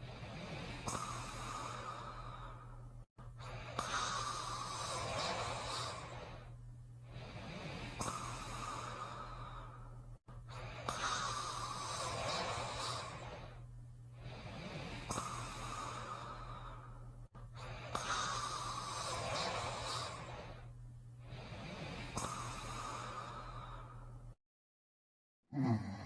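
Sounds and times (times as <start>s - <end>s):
cartoon snoring: 18.0s - 20.3s, 25.5s - 26.0s.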